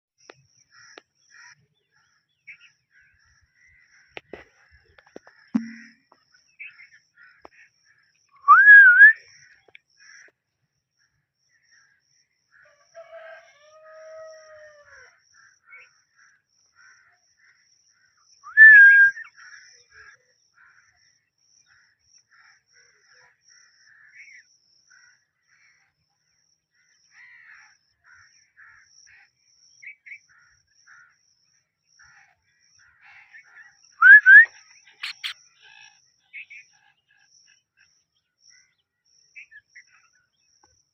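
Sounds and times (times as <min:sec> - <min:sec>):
faint chirps: 0:05.0 - 0:07.0, 0:18.4 - 0:20.1, 0:33.9 - 0:38.7.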